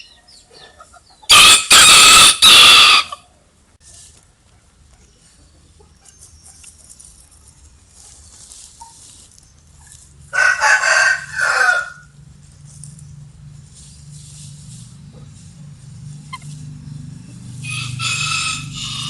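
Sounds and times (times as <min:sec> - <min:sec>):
rooster crowing: 0:01.3 - 0:03.2, 0:10.3 - 0:12.2, 0:17.6 - 0:19.0.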